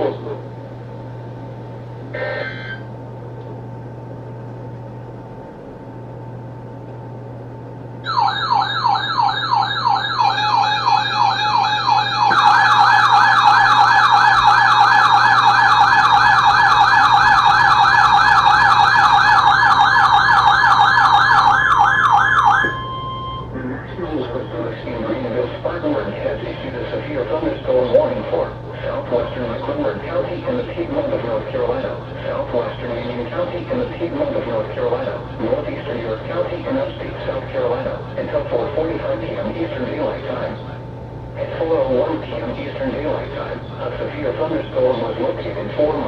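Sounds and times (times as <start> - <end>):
electronic alarm warbling: 2.1 - 2.9, 8.0 - 23.9
second louder warbling tone: 8.0 - 13.6.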